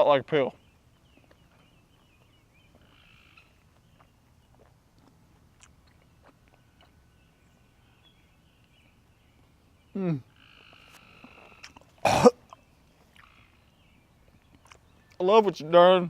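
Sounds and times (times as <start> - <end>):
distant animal calls: 2.7 - 4.1, 9.9 - 13.8
person chewing: 3.9 - 7.0, 10.9 - 13.3, 14.5 - 14.9.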